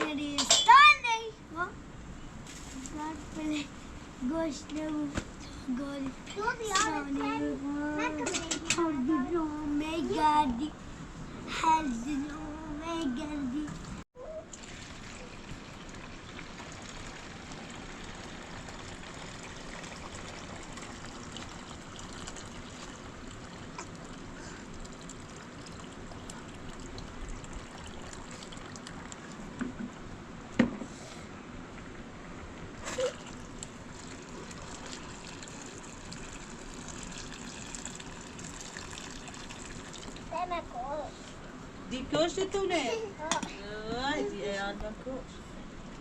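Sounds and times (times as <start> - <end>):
water trickling: 13.7 - 29.6, 33.0 - 40.4.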